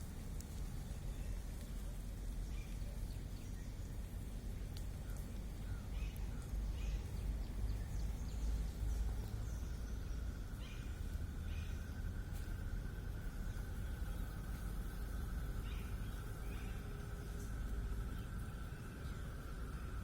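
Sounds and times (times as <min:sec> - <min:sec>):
steady low rumble: 0:00.0 - 0:20.0
faint bird chirps: 0:00.7 - 0:20.0.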